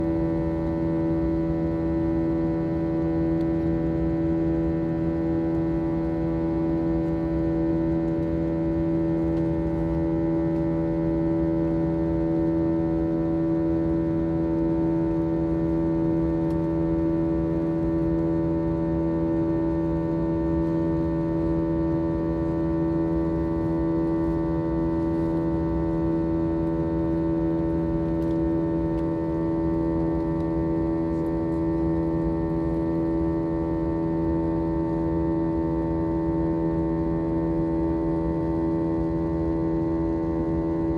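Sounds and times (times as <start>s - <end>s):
aircraft engine drone: 20.6s - 36.0s.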